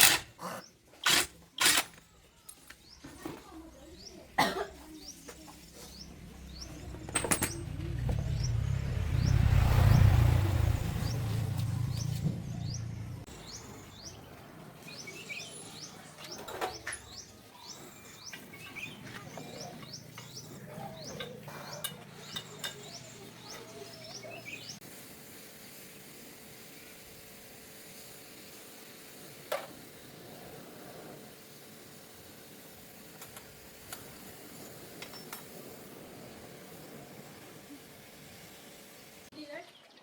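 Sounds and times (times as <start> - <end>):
small birds chirping: 2.1 - 24.8, 25.5 - 40.0
low rumble: 5.5 - 13.6.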